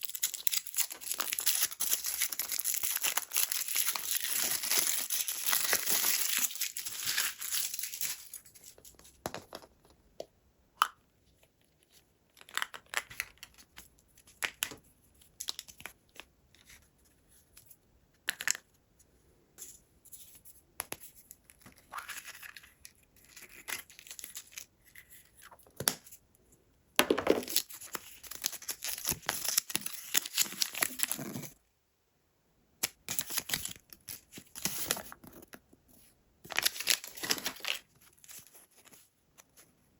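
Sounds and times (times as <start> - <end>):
plastic and cardboard crinkling: 0.0 - 9.7, 36.5 - 39.6.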